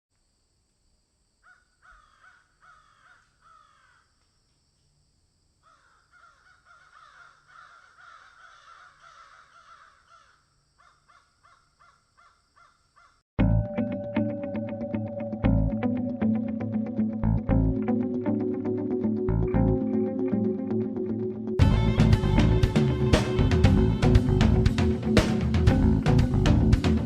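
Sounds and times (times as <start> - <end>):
crows cawing: 1.4 - 4.1, 5.6 - 13.2.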